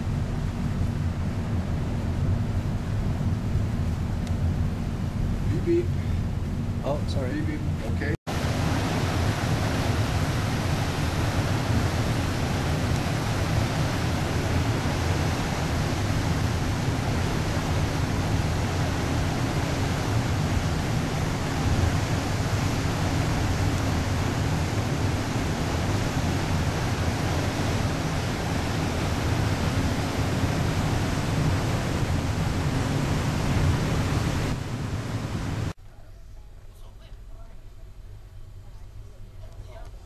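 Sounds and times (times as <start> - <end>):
low even hum: 0.0 - 40.0
water rushing: 6.8 - 35.8.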